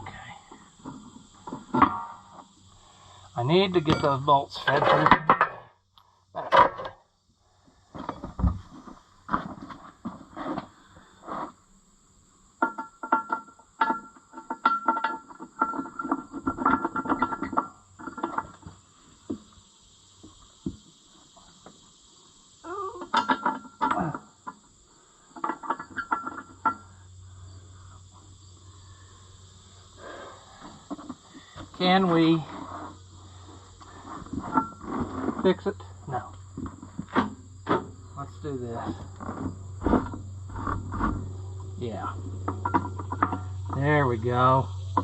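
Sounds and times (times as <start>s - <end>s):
insects chirping: 0.0s - 45.0s
metal clinks and clanks: 3.7s - 5.6s, 12.6s - 18.7s, 23.0s - 24.6s, 25.3s - 27.2s, 34.3s - 34.9s, 40.6s - 45.0s.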